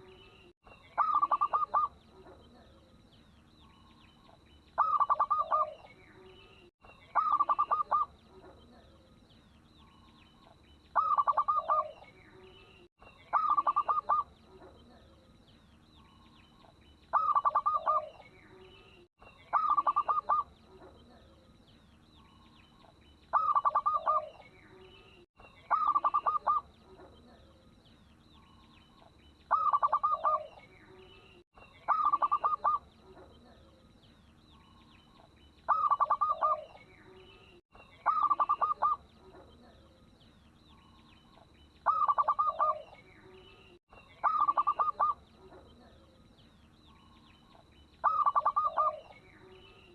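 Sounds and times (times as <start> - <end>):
small birds chirping: 0.0 - 49.9
dove cooing: 1.0 - 2.8, 4.8 - 5.9, 7.1 - 8.9, 11.0 - 12.1, 13.3 - 15.1, 17.1 - 18.2, 19.5 - 21.3, 23.3 - 24.4, 25.7 - 27.4, 29.5 - 30.7, 31.9 - 33.7, 35.7 - 36.8, 38.0 - 39.8, 41.8 - 43.0, 44.2 - 46.0, 48.0 - 49.9.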